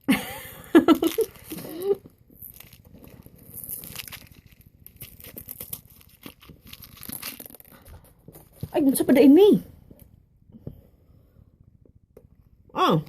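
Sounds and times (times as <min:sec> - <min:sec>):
plastic packaging crinkling: 0:00.9 - 0:09.2.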